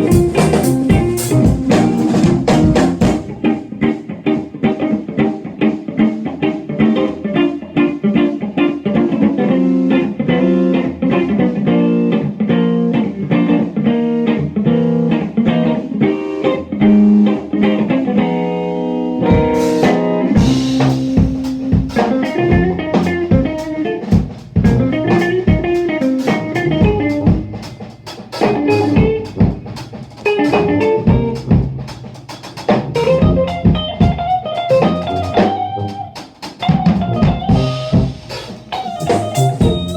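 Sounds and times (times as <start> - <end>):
funk-jazz trio playing: 0.0 - 7.0, 18.8 - 39.9.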